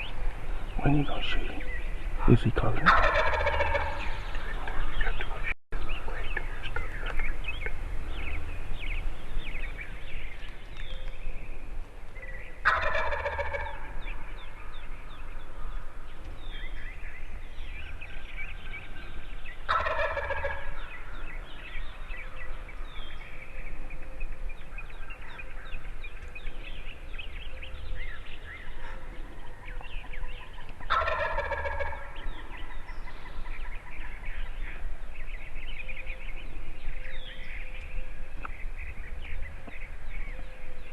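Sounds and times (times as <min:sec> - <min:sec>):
turkey gobbling: 0:02.2 - 0:05.3, 0:12.6 - 0:14.1, 0:19.7 - 0:21.1, 0:28.8 - 0:34.0.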